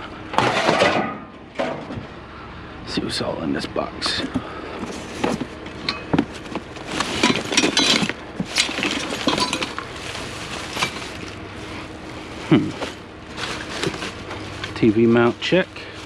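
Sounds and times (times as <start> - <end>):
metal pieces clinking: 7.1 - 9.9.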